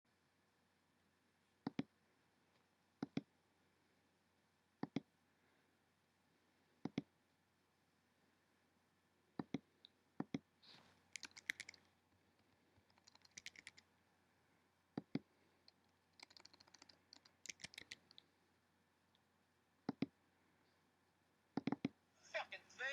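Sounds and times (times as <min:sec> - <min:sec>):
computer mouse clicking: 0:01.6 - 0:01.9, 0:03.0 - 0:03.3, 0:04.8 - 0:05.1, 0:06.8 - 0:07.1, 0:09.4 - 0:10.4, 0:11.1 - 0:13.8, 0:15.0 - 0:18.2, 0:19.8 - 0:20.2, 0:21.6 - 0:22.0
keyboard typing: 0:06.8 - 0:07.1, 0:09.4 - 0:13.8, 0:15.0 - 0:18.2, 0:19.8 - 0:20.2, 0:21.6 - 0:22.0.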